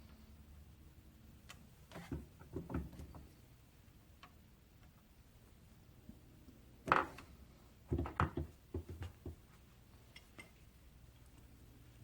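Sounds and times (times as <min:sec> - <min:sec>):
knocks and clunks: 0:07.9 - 0:09.4.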